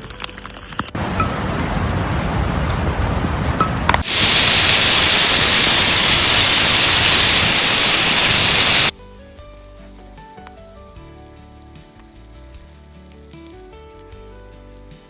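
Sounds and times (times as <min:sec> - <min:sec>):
loud static hiss: 0:01.0 - 0:08.9
faint background music: 0:08.9 - 0:15.0.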